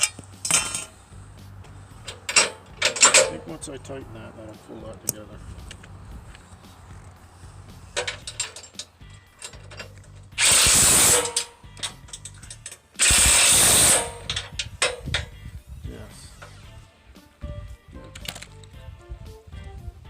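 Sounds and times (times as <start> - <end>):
ratchet clicks: 2.0 - 3.4, 8.0 - 15.4
power driver bursts: 10.3 - 12.0, 13.0 - 15.2.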